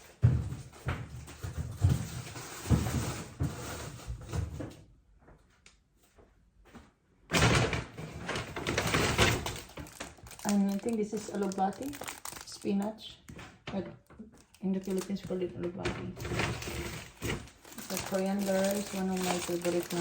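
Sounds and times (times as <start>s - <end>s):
door and items knocking: 7.3s - 10.4s
plastic bags rustling: 8.2s - 20.0s.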